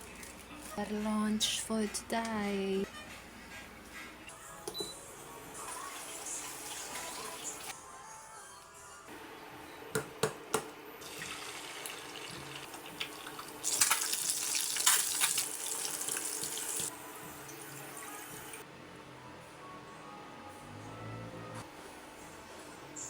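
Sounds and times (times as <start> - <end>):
tap water running into sink: 11.0 - 16.9.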